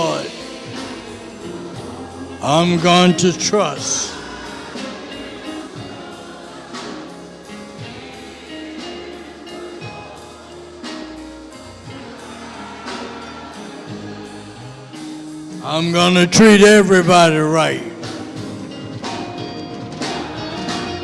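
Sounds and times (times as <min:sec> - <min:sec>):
person singing: 0:00.0 - 0:00.6, 0:01.5 - 0:04.2, 0:15.6 - 0:18.3
instrumental gospel accompaniment: 0:00.0 - 0:21.0.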